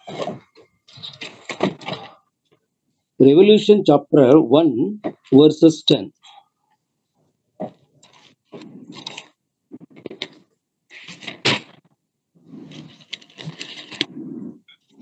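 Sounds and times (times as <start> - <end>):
book pages rustling: 0.2 - 2.0, 7.6 - 15.0.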